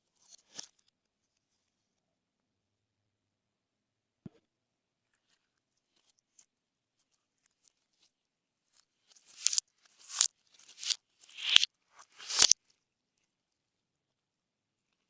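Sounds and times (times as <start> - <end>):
slime squelching and popping: 10.8 - 12.5.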